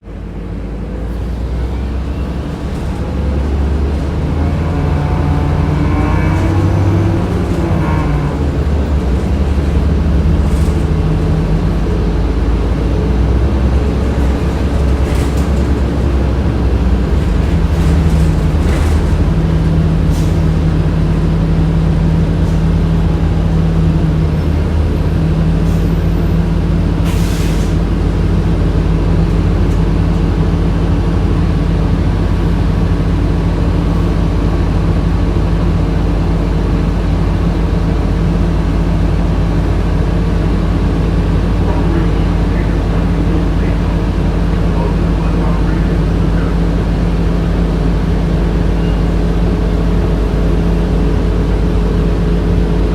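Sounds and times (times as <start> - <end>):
bus engine and air conditioning drone: 0.0 - 52.9
short air hisses: 27.1 - 27.8.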